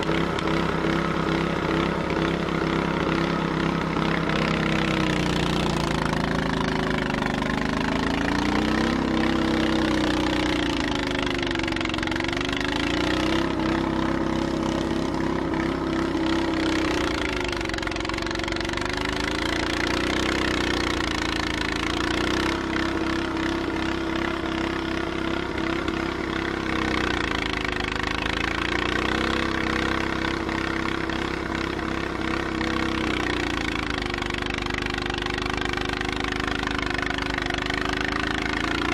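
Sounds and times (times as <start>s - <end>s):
snowblower engine running: 0.0s - 38.9s.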